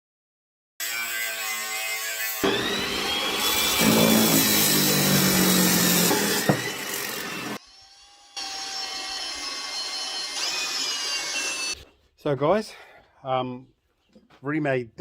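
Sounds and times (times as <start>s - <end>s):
power tools working steel: 0.8s - 11.8s.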